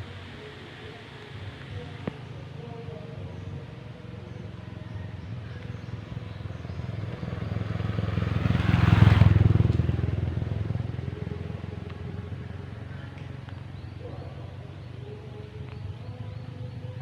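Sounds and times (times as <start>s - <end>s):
motorcycle driving past: 4.4s - 13.4s.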